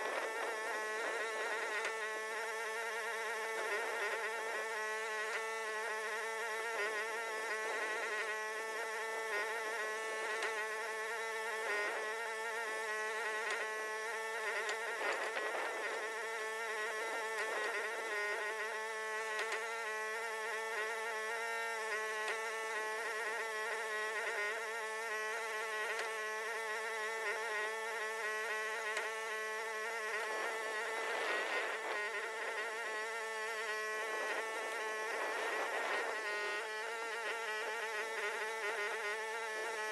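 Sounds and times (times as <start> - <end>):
excavator engine droning: 27.2 - 39.9.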